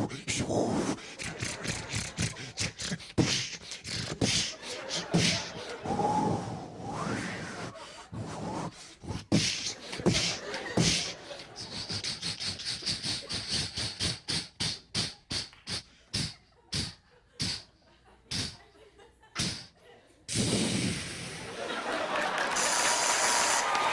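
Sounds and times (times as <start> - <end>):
audience applause: 21.5 - 23.9.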